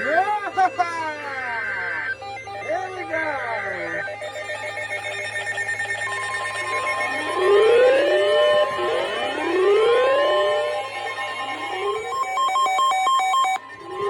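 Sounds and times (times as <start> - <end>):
steady high alarm tone: 0.0 - 14.0
siren-like rising sweeps: 4.3 - 14.0.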